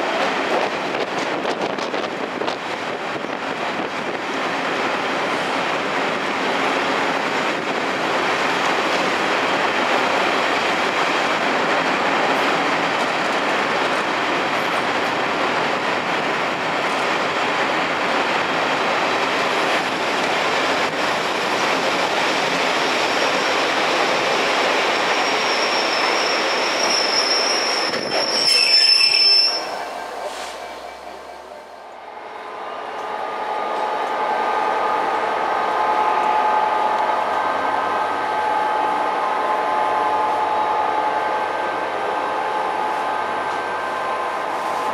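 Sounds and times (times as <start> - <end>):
train running on rails: 0.0 - 44.9
metallic wheel squeal: 25.2 - 30.8.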